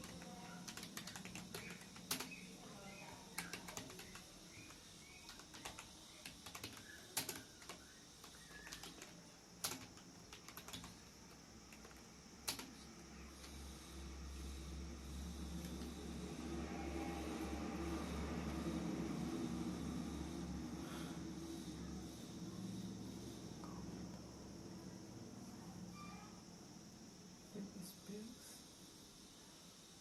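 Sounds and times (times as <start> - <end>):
typing on computer keyboard: 0.0 - 2.6, 3.2 - 13.7, 15.5 - 16.0.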